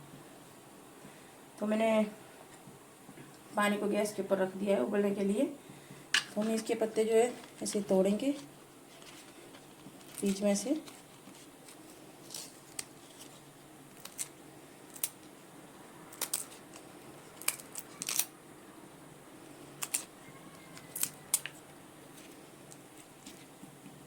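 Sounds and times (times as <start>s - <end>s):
leaves being torn by hand: 13.9s - 15.3s, 16.1s - 18.3s, 19.8s - 20.1s, 20.8s - 21.6s.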